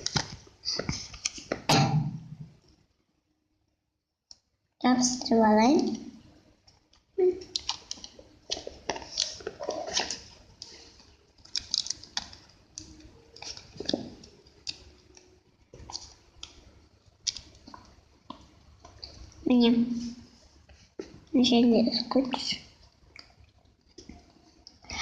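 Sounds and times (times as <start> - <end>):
paper and sticky tape crinkling: 0.0 - 1.6, 7.5 - 16.5.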